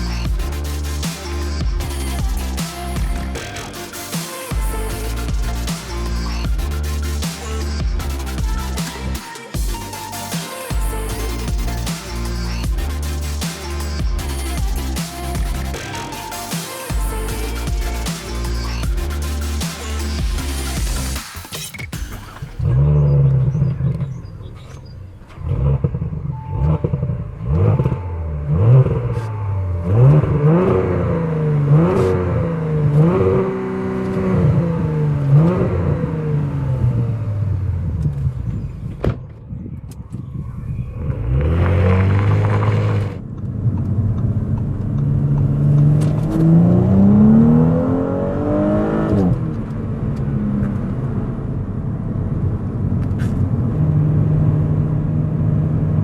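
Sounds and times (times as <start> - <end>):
car engine accelerating: 22.3 - 39.0, 40.8 - 56.0.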